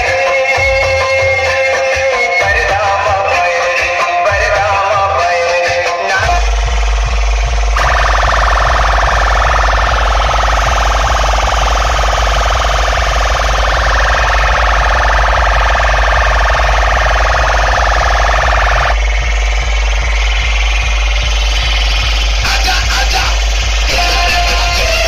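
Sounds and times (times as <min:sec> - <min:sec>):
heavy deep bass: 0:00.0 - 0:25.0
warbling siren-like electronic tone: 0:06.2 - 0:25.0.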